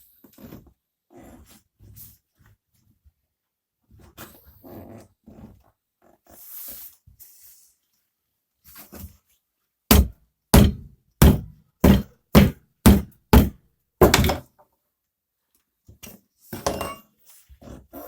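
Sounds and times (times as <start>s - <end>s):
hammer tapping tyre on rim: 9.9s - 14.4s.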